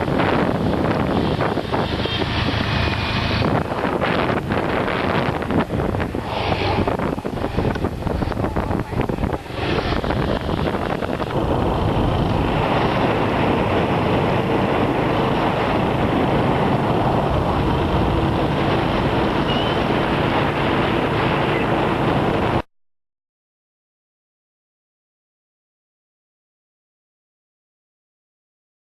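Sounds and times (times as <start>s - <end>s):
wind buffeting microphone: 0.0s - 22.7s.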